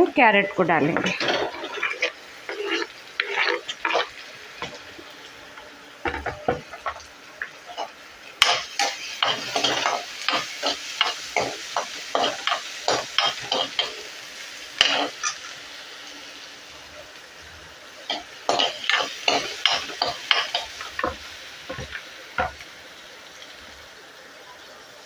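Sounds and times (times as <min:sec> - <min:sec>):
vegetables frying in oil: 0:00.0 - 0:25.0
spatula scraping and tapping pan: 0:00.8 - 0:05.0, 0:06.0 - 0:14.0, 0:18.1 - 0:22.6.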